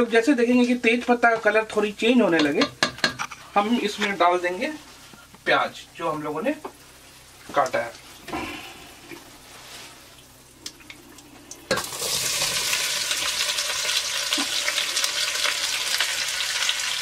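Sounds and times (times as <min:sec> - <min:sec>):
faint frying hiss: 0:00.0 - 0:17.0
onions sizzling in hot oil: 0:11.7 - 0:17.0.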